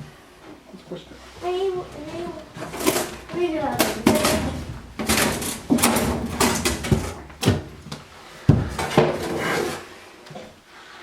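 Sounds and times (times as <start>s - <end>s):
hard objects knocking and scraping: 2.0s - 9.8s.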